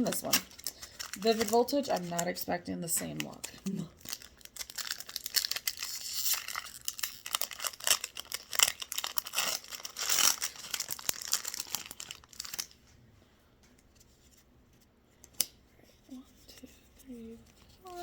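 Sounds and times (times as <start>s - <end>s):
foil wrapper crinkling and tearing: 0.0s - 12.8s.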